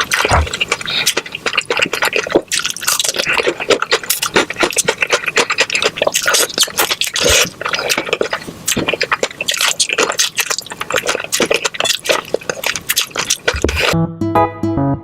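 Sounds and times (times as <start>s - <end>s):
crunching and chewing: 0.0s - 14.0s
electric piano music: 14.0s - 15.0s.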